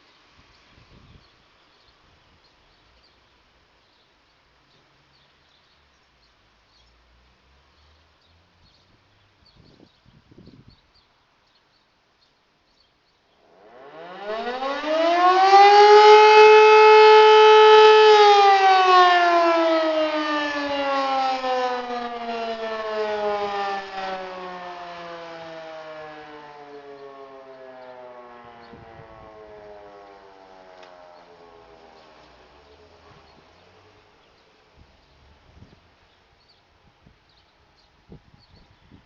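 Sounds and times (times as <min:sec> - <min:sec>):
motor siren howl: 0:13.4 - 0:34.2.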